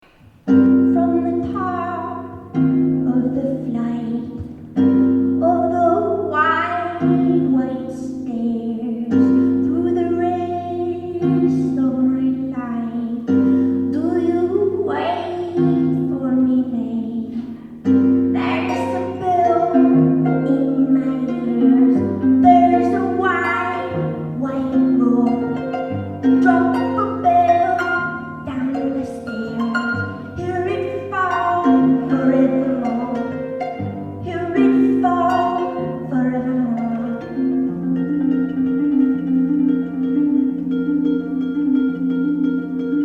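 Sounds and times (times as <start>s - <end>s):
harp bass notes plucked: 9.7s - 43.0s.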